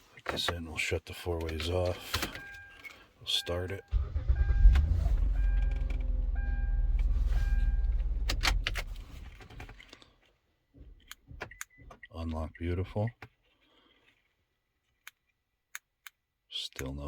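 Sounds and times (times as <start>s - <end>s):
car engine running: 3.9s - 9.8s.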